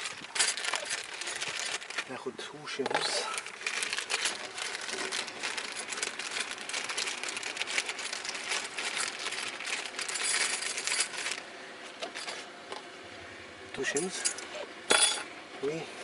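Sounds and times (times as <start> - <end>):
small metal parts clinking: 0.0 - 2.1, 2.8 - 11.4, 12.0 - 12.4, 13.8 - 15.3
rustling: 0.0 - 12.6.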